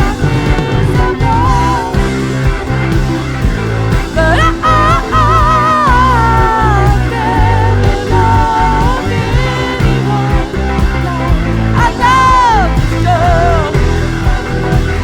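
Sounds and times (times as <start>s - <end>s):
rock band playing: 0.0s - 15.0s
sliding lead melody: 0.0s - 15.0s.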